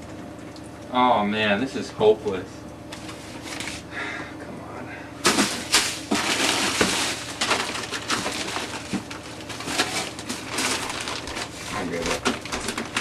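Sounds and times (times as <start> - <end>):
frozen packages crunching and rustling: 5.2 - 13.0
packages knocking and clicking: 5.2 - 13.0.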